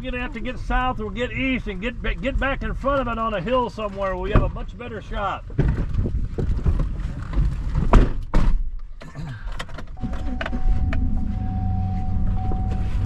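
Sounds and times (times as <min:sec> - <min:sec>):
car doors closing: 0:09.6 - 0:13.0
thin high tone: 0:10.0 - 0:13.0
vehicle low hum: 0:10.0 - 0:13.0.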